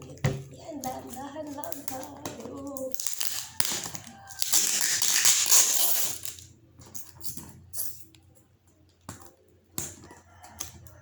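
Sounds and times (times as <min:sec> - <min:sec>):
packaging crinkling: 0:00.9 - 0:06.5
knife cutting open package: 0:02.9 - 0:06.4.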